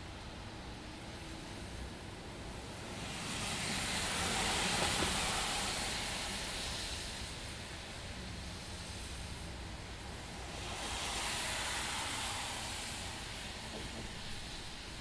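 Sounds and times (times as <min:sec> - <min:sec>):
car tyres hissing on wet road: 0:00.0 - 0:15.0
steady rain: 0:00.0 - 0:15.0.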